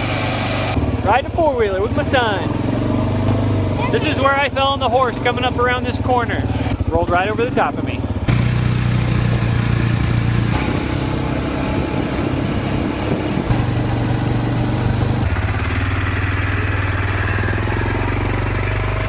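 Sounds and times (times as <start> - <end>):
atv engine humming: 0.8 - 10.3, 14.8 - 19.0.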